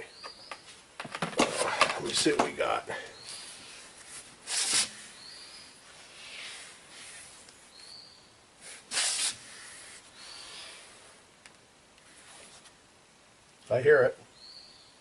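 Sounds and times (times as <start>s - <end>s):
soft breaths close to microphone: 2.9s - 11.3s
hissing air bursts: 4.4s - 5.2s, 8.6s - 11.2s.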